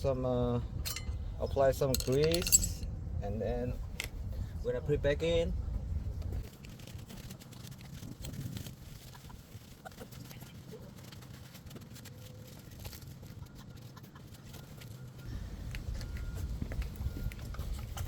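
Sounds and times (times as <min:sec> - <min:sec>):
small metal brake parts clicking: 0:02.0 - 0:02.8.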